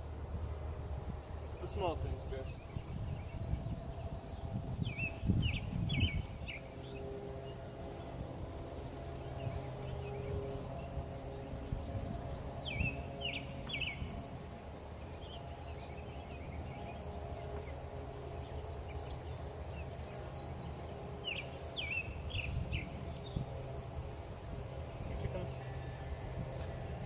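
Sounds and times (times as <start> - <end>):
low background rumble: 0.0 - 27.0
songbird chirping: 12.5 - 26.7.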